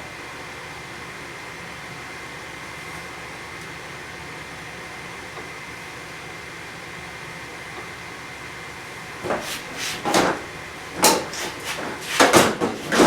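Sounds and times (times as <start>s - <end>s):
steady background hum: 0.0s - 13.0s
scrapes and clunks of handling: 9.2s - 13.0s.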